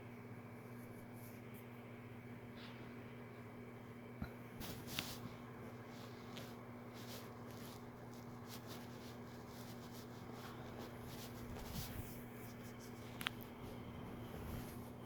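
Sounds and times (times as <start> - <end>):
steady low hum: 0.0 - 15.0
scratchy rubbing: 5.9 - 13.1.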